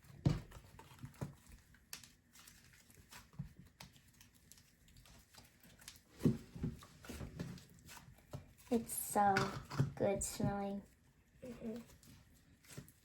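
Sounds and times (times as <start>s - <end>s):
hands squishing slime: 0.4s - 9.4s
faint clicks and crackles: 0.6s - 13.0s.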